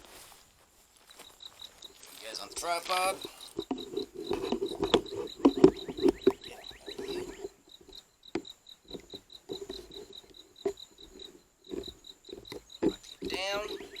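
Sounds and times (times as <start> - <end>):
insect chirping: 0.0 - 14.0
winch creaking: 2.2 - 14.0
metallic clicks and knocks: 3.0 - 14.0.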